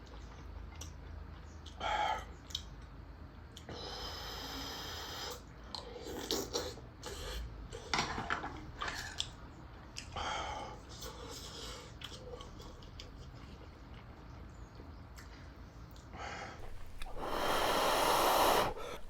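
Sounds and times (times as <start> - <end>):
person slurping noodles: 16.6 - 19.0
sharp clicks: 16.6 - 19.0.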